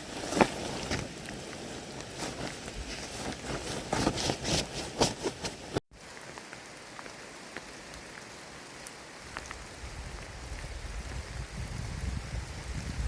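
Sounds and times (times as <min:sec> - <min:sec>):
rain falling steadily: 0:00.0 - 0:03.9, 0:05.7 - 0:13.0
rustling and knocks: 0:02.2 - 0:05.8.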